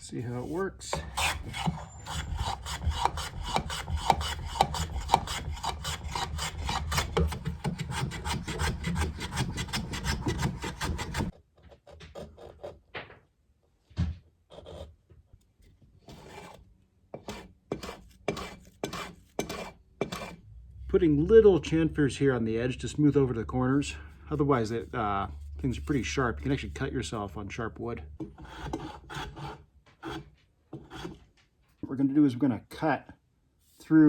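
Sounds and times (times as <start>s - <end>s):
rasp stroking across wood: 0.0s - 11.4s, 16.0s - 20.4s, 28.2s - 31.3s.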